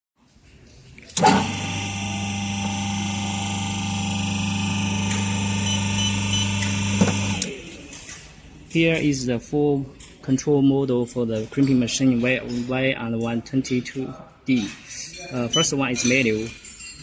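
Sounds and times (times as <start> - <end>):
pump motor switch click: 1.1 - 7.5
electric pump motor humming: 1.1 - 7.6.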